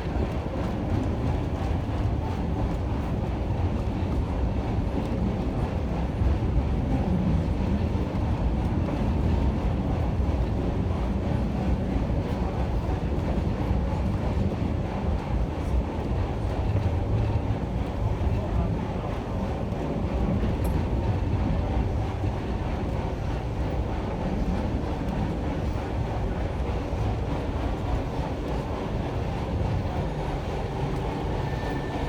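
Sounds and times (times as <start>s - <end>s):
train wheels rolling on track: 0.0s - 32.0s.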